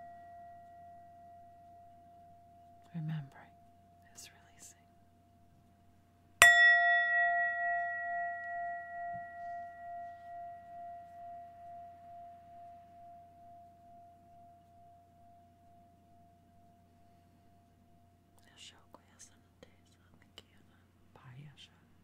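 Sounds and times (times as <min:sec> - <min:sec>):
singing bowl ringing: 0:00.0 - 0:04.0, 0:06.4 - 0:16.8.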